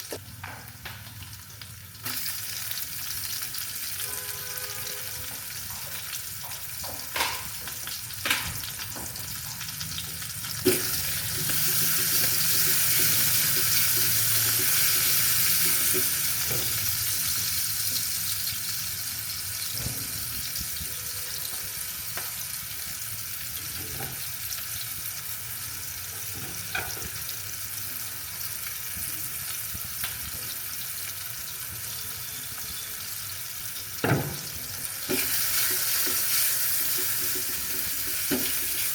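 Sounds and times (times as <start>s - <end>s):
food sizzling in a pan: 0.0s - 38.9s.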